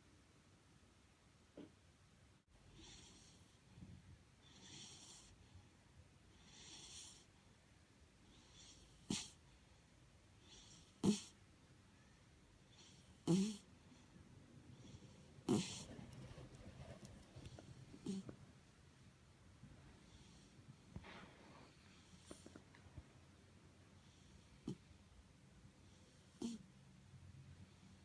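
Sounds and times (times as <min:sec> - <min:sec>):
dog snoring: 0:02.7 - 0:03.6, 0:04.4 - 0:05.4, 0:06.3 - 0:07.3, 0:08.3 - 0:09.4, 0:10.4 - 0:11.4, 0:12.7 - 0:13.7, 0:14.8 - 0:18.4, 0:25.9 - 0:26.6.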